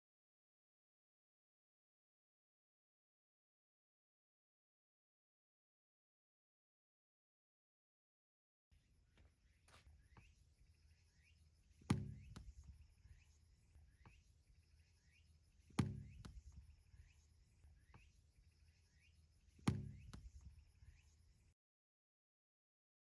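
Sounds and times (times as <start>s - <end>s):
distant tennis ball knocks: 11.9s - 12.7s, 15.8s - 16.6s, 19.7s - 20.5s
tennis ball struck by racket: 11.9s - 12.7s, 15.7s - 16.6s, 19.6s - 20.5s.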